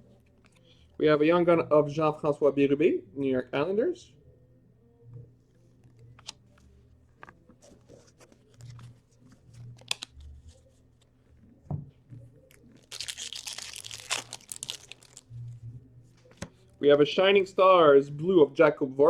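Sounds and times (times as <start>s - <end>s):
card pack wrapper tearing: 9.8s - 10.2s, 12.5s - 15.3s.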